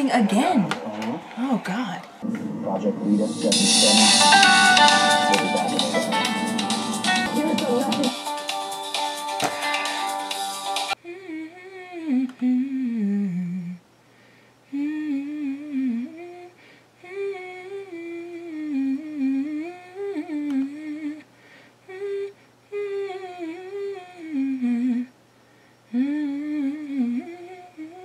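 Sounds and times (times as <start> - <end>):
woman humming: 3.8 - 8.2, 11.0 - 13.8, 14.7 - 21.2, 21.9 - 25.2, 25.9 - 28.0.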